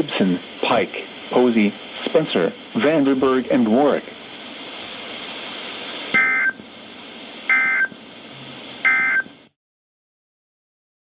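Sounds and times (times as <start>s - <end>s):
radio hiss: 0.0s - 9.5s
shrill buzzy data bursts: 6.1s - 6.6s, 7.5s - 8.0s, 8.8s - 9.3s.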